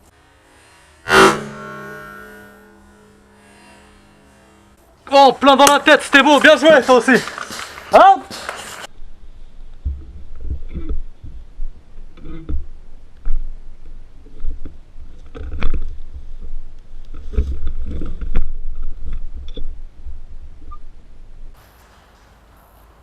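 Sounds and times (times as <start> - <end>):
low rumbling thumps and rustles: 9.0 - 21.6.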